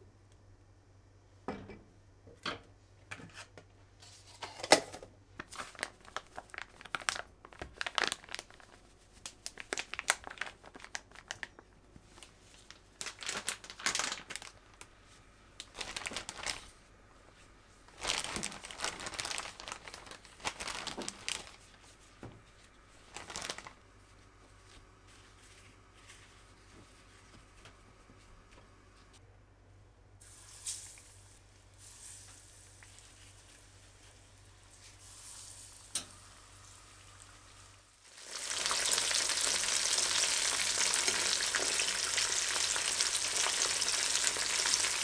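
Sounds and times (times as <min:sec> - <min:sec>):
crinkling and rustling by hand: 0:02.8 - 0:29.2, 0:30.2 - 0:37.6.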